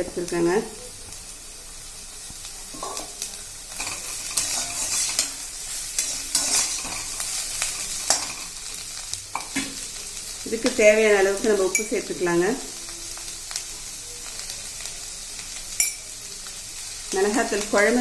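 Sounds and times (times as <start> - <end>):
vegetables sizzling in oil: 0.0 - 18.0
spatula scraping pan: 3.7 - 8.5.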